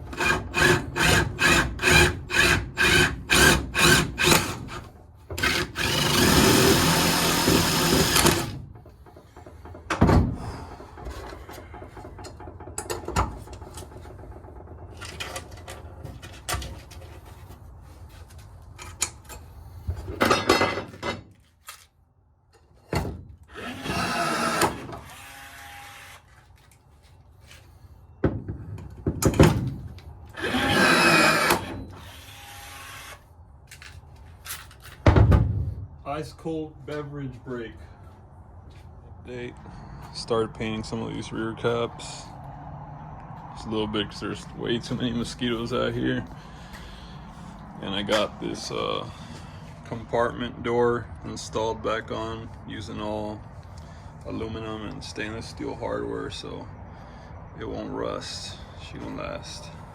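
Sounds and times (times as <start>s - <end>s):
hand saw cutting wood: 0.0s - 8.6s, 23.5s - 26.3s, 30.3s - 33.2s
power tool running: 5.4s - 8.6s, 23.5s - 26.3s, 30.3s - 33.2s.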